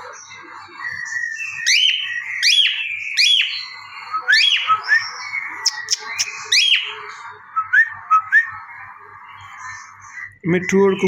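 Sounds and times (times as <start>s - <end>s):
soft parrot chattering: 5.6s - 7.1s.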